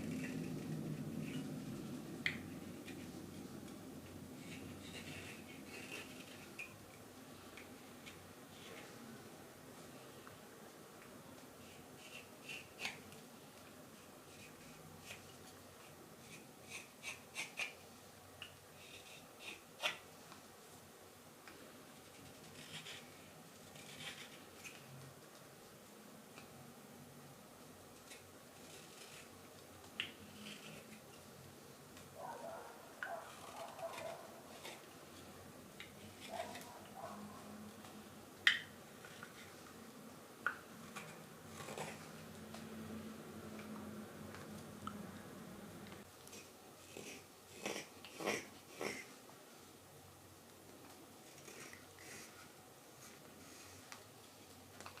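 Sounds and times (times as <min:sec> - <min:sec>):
knife shaving wood: 0:02.5 - 0:06.8, 0:11.6 - 0:17.8, 0:18.8 - 0:20.0, 0:22.0 - 0:25.0, 0:28.0 - 0:29.6, 0:30.2 - 0:31.2, 0:33.1 - 0:36.8.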